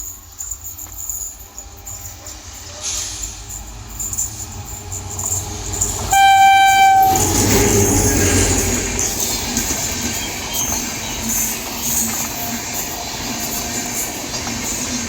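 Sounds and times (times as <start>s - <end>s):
train passing at speed: 0.0s - 15.0s
train horn blast: 6.1s - 9.2s.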